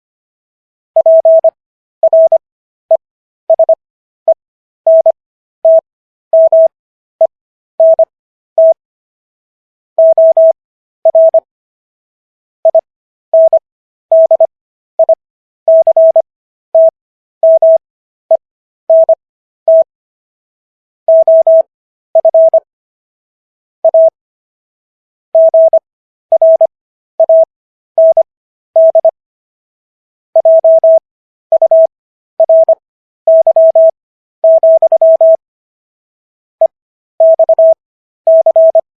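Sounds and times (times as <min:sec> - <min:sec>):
morse code beep tone: 0:01.0 - 0:05.8, 0:06.4 - 0:08.8, 0:10.0 - 0:11.5, 0:12.6 - 0:19.9, 0:21.1 - 0:22.7, 0:23.8 - 0:24.2, 0:25.4 - 0:29.2, 0:30.4 - 0:35.4, 0:36.6 - 0:38.9.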